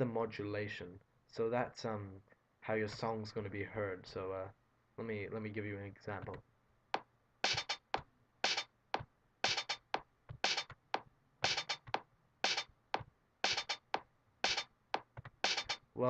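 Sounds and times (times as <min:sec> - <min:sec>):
drum machine pattern: 0:07.4 - 0:08.7, 0:09.4 - 0:10.8, 0:11.4 - 0:15.8.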